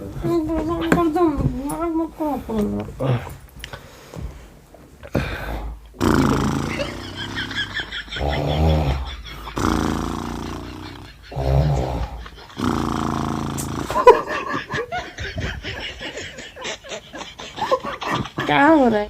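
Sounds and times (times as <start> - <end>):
man fake-snoring: 5.1 - 14.4.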